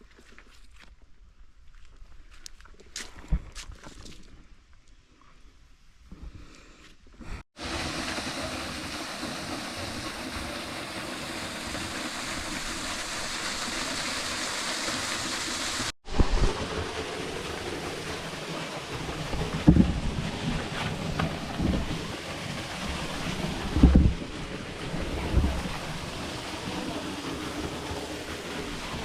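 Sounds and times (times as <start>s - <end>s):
waterfall rushing: 7.6s - 16.0s, 17.0s - 29.0s
wind thumping on microphone: 19.0s - 26.2s.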